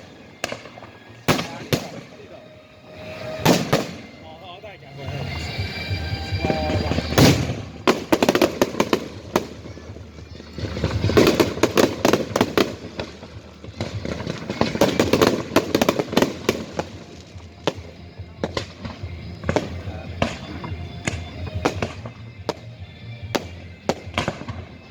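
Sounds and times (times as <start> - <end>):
fireworks crackling pops: 0.0 - 4.4, 6.4 - 24.9
firework bang: 3.2 - 4.2, 6.4 - 22.6.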